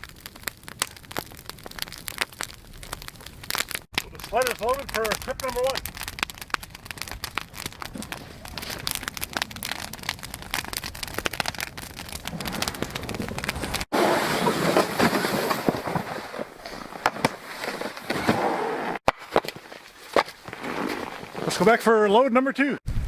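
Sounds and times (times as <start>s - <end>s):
sled dragging over snow: 12.2s - 19.0s, 19.6s - 21.8s
boots crunching snow: 12.4s - 21.8s.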